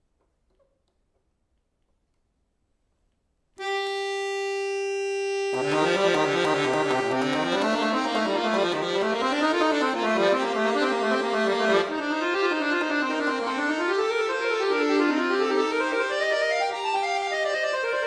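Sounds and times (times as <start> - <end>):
accordion playing: 3.6 - 18.0.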